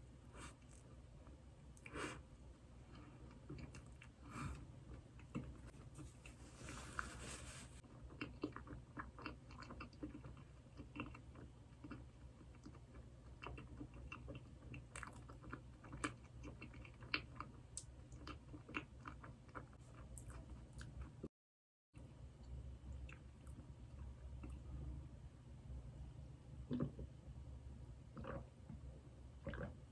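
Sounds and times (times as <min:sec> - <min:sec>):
person chewing: 0:03.2 - 0:21.2.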